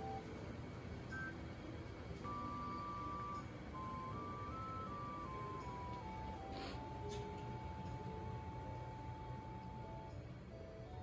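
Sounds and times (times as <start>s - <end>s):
slow melody of held notes: 2.2s - 11.0s.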